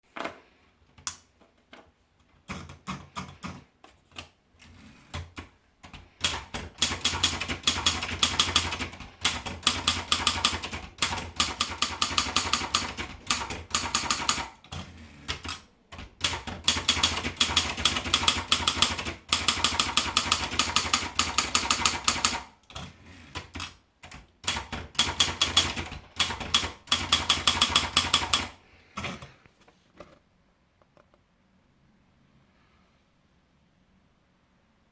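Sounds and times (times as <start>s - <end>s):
typewriter keys clacking: 5.1s - 29.3s.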